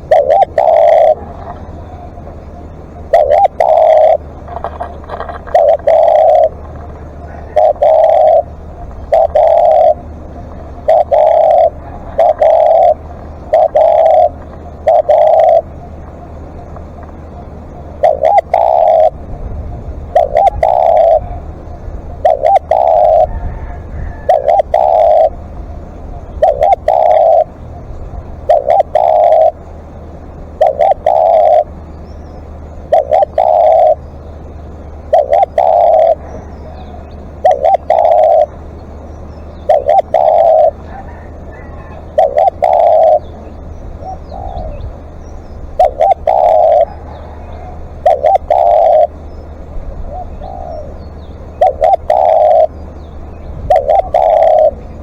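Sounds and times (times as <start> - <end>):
dove cooing: 0.0 - 55.0.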